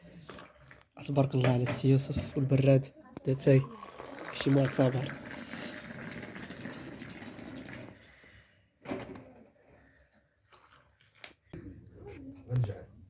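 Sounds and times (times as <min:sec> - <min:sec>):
tea pouring into a glass: 0:03.4 - 0:08.0.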